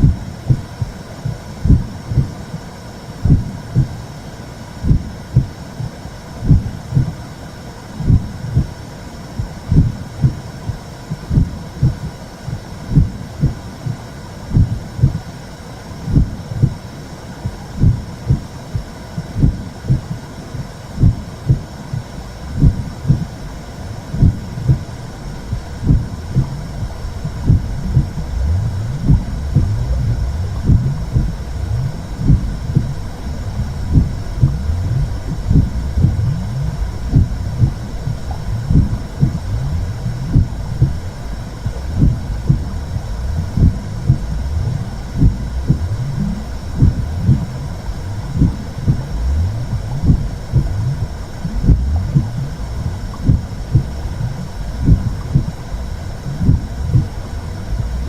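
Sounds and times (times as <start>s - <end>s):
muffled heartbeat thumping: 0.0s - 2.6s, 3.2s - 4.0s, 4.8s - 7.2s, 8.0s - 8.8s, 9.4s - 15.3s, 16.1s - 58.0s
low whooshing rumble: 21.0s - 58.0s.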